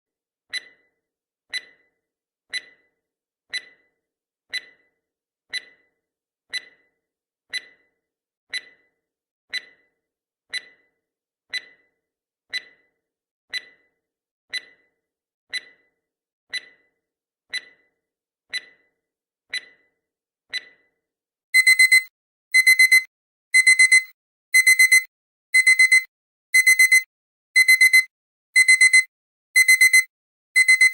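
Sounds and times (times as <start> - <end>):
alarm clock beeping: 0.5 - 0.9, 21.6 - 30.9
clock ticking: 0.5 - 0.9, 1.5 - 6.9, 7.5 - 13.9, 14.5 - 19.9, 20.5 - 20.9, 21.6 - 30.9.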